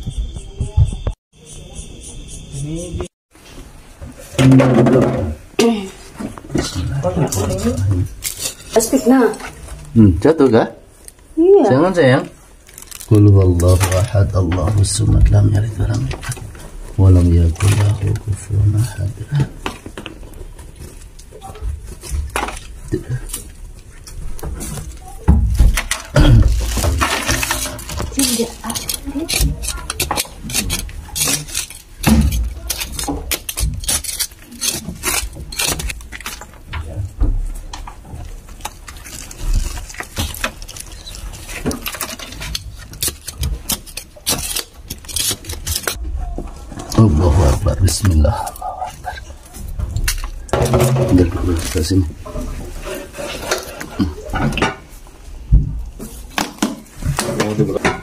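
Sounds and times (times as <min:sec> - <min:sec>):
hard objects clinking and knocking: 0:19.4 - 0:47.0.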